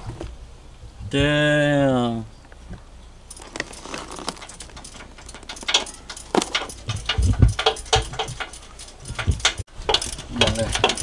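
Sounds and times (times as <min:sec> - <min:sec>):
metal tools clinking and rattling: 0:03.3 - 0:11.0.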